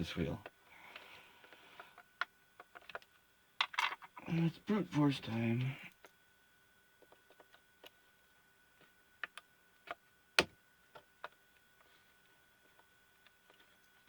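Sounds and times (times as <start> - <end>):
plastic parts clicking and snapping: 1.8 - 4.1.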